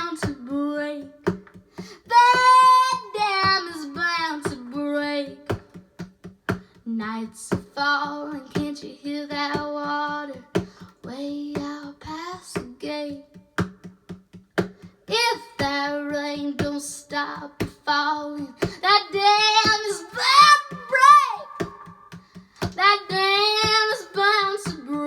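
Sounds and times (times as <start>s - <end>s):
girl singing: 0.0s - 6.0s, 6.8s - 13.9s, 14.8s - 25.0s
sharp percussive beat: 5.4s - 6.8s, 13.4s - 15.9s, 17.6s - 17.9s, 18.6s - 25.0s.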